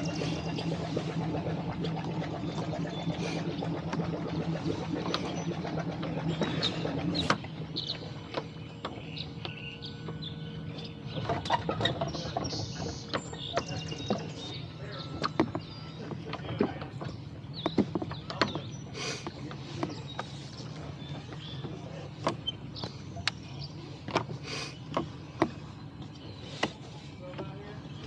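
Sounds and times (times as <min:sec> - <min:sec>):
water splashing: 0:00.0 - 0:09.5
birds chirping: 0:00.0 - 0:28.0
knocks around rowboat: 0:00.0 - 0:28.0
low steady hum: 0:00.0 - 0:28.0.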